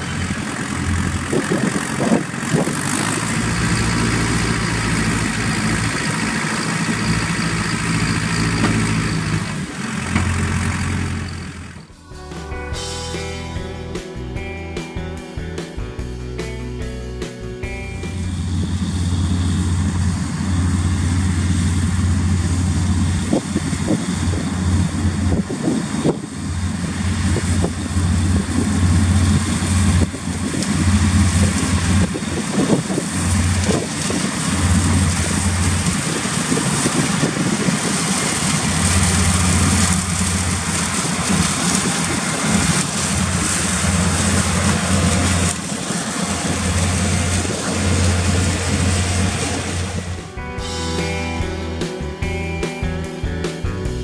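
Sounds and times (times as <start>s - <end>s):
wind rumbling on microphone: 0.0s - 9.7s, 18.4s - 50.2s
diesel engine running: 0.0s - 54.0s.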